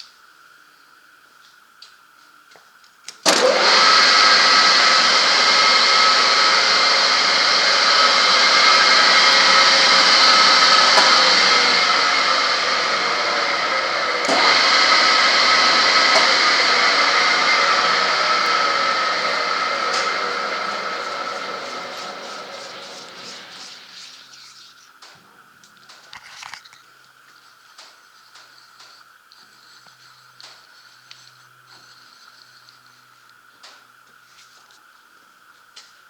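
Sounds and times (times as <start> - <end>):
lathe motor whirring whine: 3.3 - 24.7.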